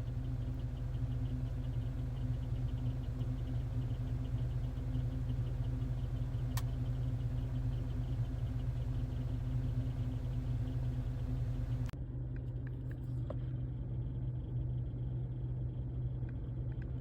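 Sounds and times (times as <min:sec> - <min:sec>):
car engine humming: 0:00.0 - 0:12.0.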